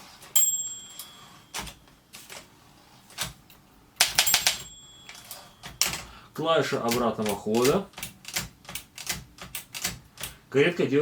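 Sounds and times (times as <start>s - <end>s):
typewriter bell ding: 0.4s - 1.8s, 4.0s - 6.2s
typewriter keys clacking: 1.5s - 2.5s, 4.0s - 6.1s, 6.7s - 10.4s.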